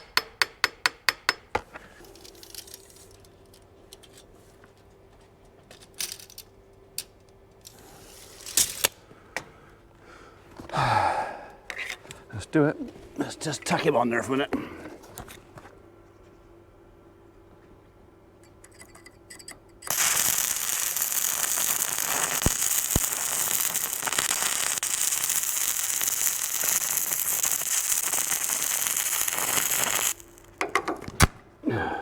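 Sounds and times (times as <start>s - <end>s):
arc welding crackling sizzle: 7.6s - 9.0s, 19.9s - 31.4s.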